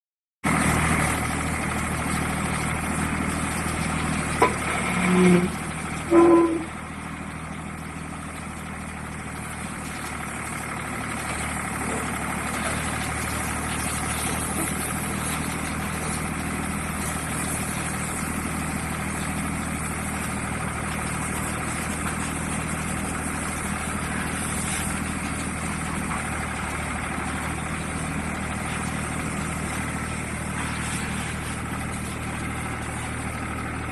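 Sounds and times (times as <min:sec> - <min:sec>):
excavator engine running: 0:00.4 - 0:33.9
short electronic tones: 0:06.1 - 0:06.7.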